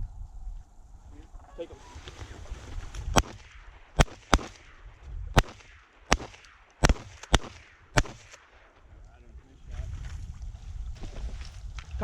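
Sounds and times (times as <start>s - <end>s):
shotgun shots: 3.1s - 8.9s.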